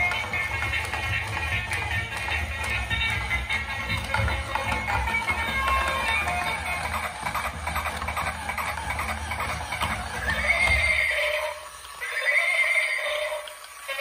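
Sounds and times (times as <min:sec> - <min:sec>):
horse hoofbeats clattering: 0:00.0 - 0:13.9
horse neighing: 0:10.2 - 0:13.5.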